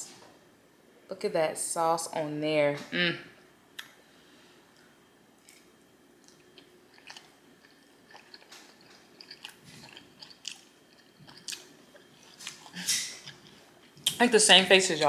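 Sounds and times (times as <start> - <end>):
person chewing food: 4.7 - 14.2.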